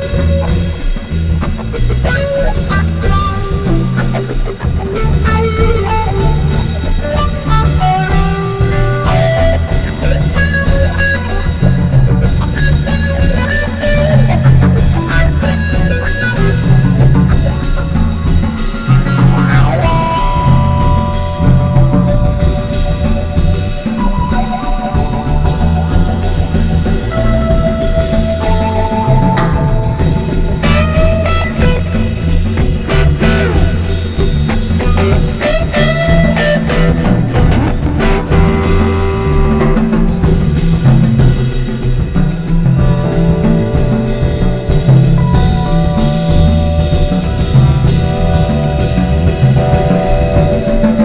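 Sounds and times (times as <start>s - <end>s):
bass guitar: 0.0s - 51.0s
drum kit with cymbals: 0.0s - 51.0s
electric guitar bending notes: 0.0s - 51.0s
jazz-rock band improvising: 0.0s - 51.0s.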